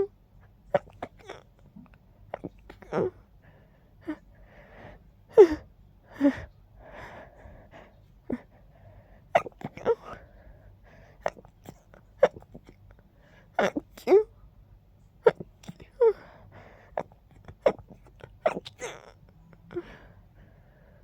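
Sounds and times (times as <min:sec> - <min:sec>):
stifled sneezes: 0:09.3 - 0:10.2, 0:11.2 - 0:12.8, 0:16.9 - 0:19.1.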